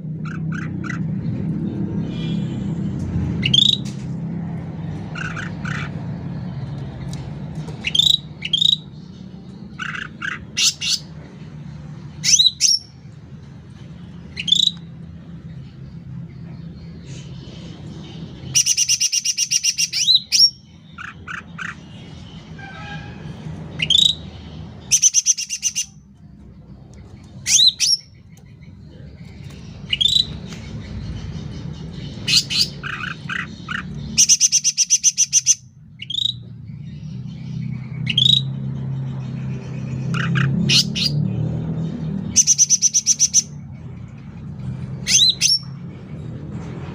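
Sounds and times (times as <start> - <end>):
songbird rattling chatters: 4.8 - 6.1, 9.7 - 11.1, 17.8 - 22.2, 27.3 - 36.4, 39.9 - 41.2.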